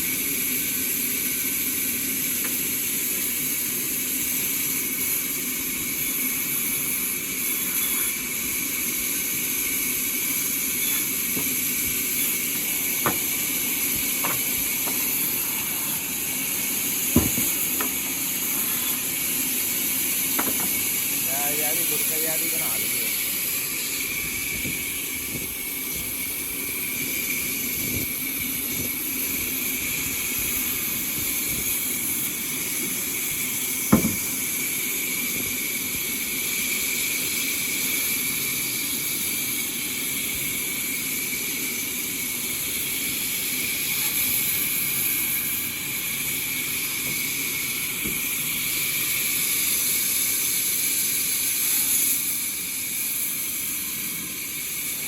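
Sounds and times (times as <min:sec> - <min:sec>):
sawmill machinery whining: 0:00.0 - 0:55.0
sharp knock: 0:33.9 - 0:34.2.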